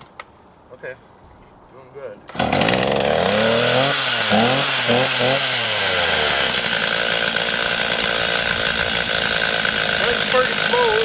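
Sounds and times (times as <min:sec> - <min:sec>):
chainsaw engine surging: 0:02.3 - 0:11.0.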